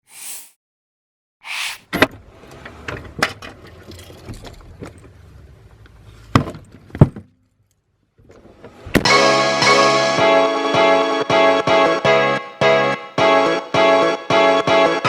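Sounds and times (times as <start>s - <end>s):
short swish: 0.1s - 0.6s, 1.4s - 1.8s.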